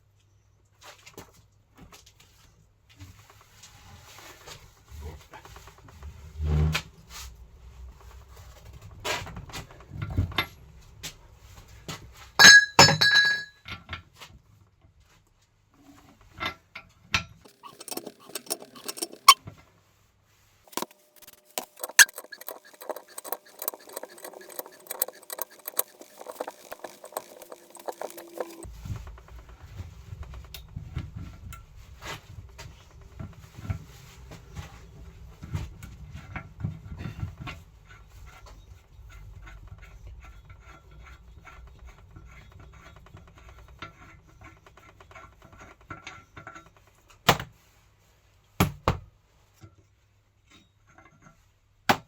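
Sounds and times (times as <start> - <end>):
metal tools clinking and knocking: 12.4 - 13.5, 17.5 - 19.4, 20.7 - 28.6
ringing metal clink: 12.4 - 13.5
rapid clicks: 17.5 - 19.4, 20.7 - 28.7.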